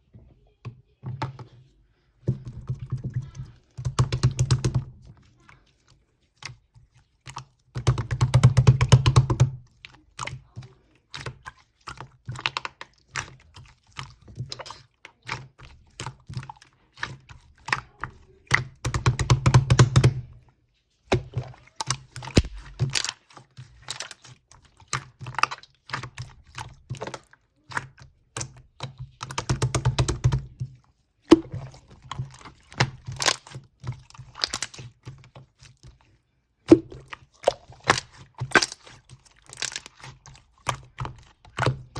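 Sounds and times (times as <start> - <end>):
slime clicking and popping: 22.1 - 23.2, 32.8 - 34.9.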